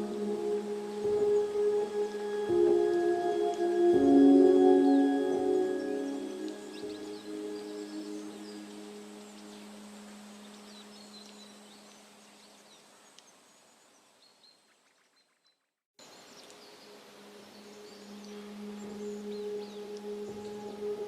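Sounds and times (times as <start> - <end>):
low humming drone: 0.0 - 11.4
steady hiss: 0.0 - 14.2, 16.0 - 21.0.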